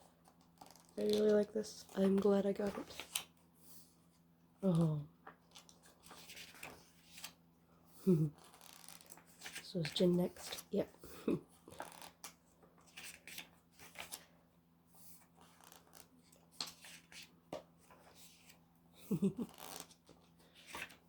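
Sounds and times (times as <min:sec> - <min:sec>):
book pages rustling: 0:00.1 - 0:03.4, 0:05.2 - 0:07.4, 0:08.4 - 0:10.7, 0:11.6 - 0:14.3, 0:15.0 - 0:18.6, 0:19.4 - 0:21.0.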